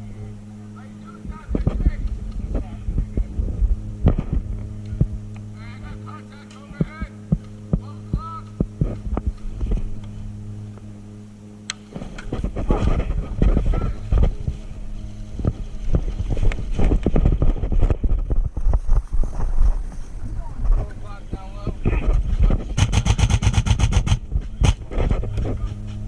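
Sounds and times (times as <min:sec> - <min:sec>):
electrical hum: 0:00.0 - 0:26.0
wind buffeting microphone: 0:01.2 - 0:05.6, 0:11.9 - 0:26.0
sharp clicks: 0:22.8 - 0:24.8.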